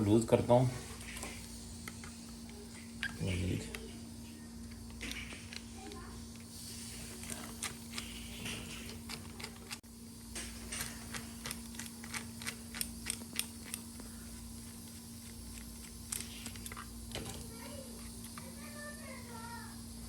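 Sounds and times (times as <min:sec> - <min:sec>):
screws and parts clicking: 0:07.2 - 0:09.8, 0:10.7 - 0:14.0, 0:14.7 - 0:18.5.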